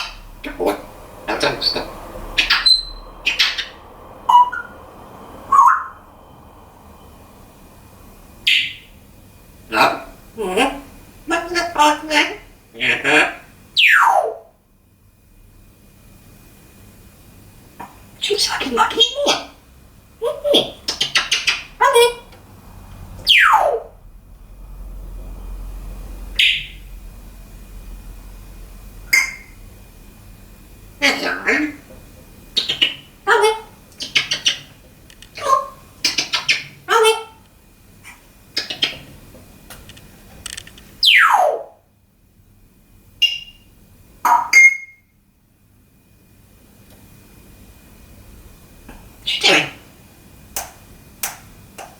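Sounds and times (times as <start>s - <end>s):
parrot harsh squawk: 0.0s - 4.7s, 5.5s - 6.1s, 8.4s - 8.9s, 9.7s - 14.5s, 20.2s - 22.3s, 23.2s - 23.9s, 29.1s - 29.6s, 31.0s - 31.9s, 32.6s - 37.4s, 41.0s - 41.8s, 44.2s - 45.0s, 49.2s - 49.9s
parrot calling: 0.0s - 9.0s, 9.7s - 14.6s, 18.2s - 22.4s, 23.0s - 24.1s, 26.3s - 26.9s, 29.0s - 29.6s, 31.0s - 31.9s, 32.5s - 37.4s, 38.0s - 39.2s, 40.9s - 41.8s, 43.2s - 45.0s, 49.2s - 50.0s.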